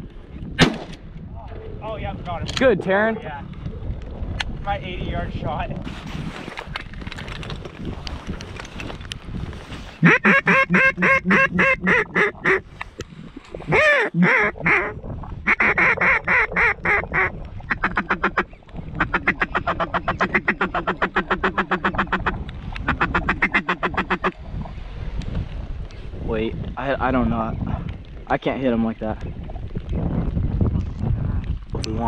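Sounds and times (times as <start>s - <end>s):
duck call feeding chatter: 10.0s - 12.6s, 15.5s - 24.3s
duck call quacks: 10.0s - 12.6s, 13.7s - 14.9s, 15.5s - 18.4s, 19.0s - 22.3s, 22.9s - 24.3s.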